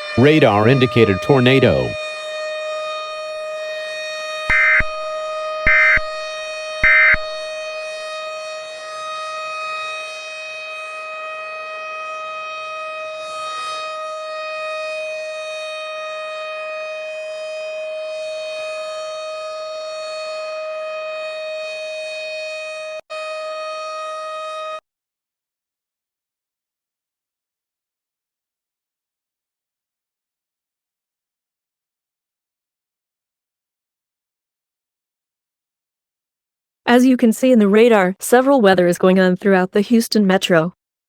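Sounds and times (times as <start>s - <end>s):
warning siren steady tone: 0.0s - 24.8s
loud electronic beeps: 0.2s - 2.0s, 4.5s - 5.0s, 5.7s - 6.2s, 6.8s - 7.4s.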